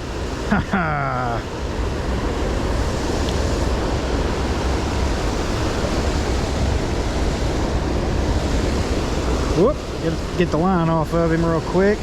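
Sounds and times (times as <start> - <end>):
creek water rushing: 0.0 - 12.0
wind buffeting microphone: 0.0 - 12.0.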